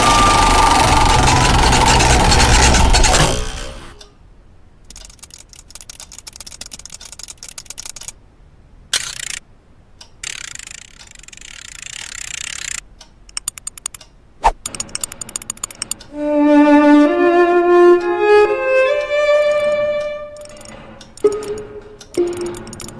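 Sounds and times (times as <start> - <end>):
fast small clicks: 0.0 - 4.1, 4.8 - 8.2, 8.9 - 16.1, 19.4 - 22.9.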